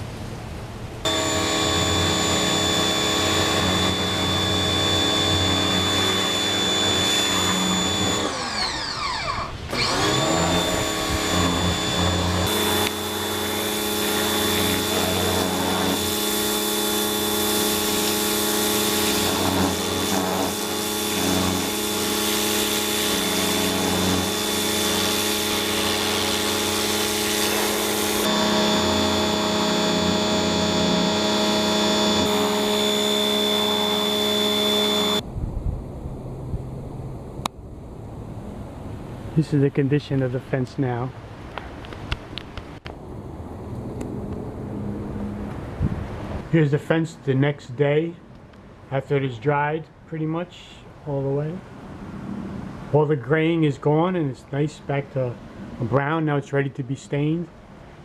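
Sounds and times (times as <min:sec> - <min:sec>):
electric pressure washer motor whine: 0:01.0 - 0:35.2.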